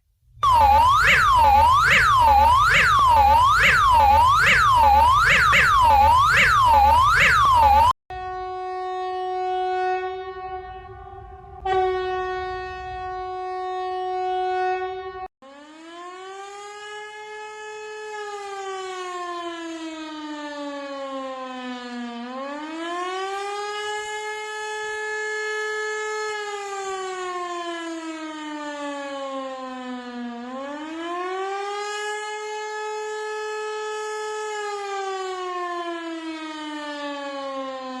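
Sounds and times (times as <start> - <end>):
buzzy alarm tone: 0.4 - 7.9
siren-like wail: 0.4 - 38.0.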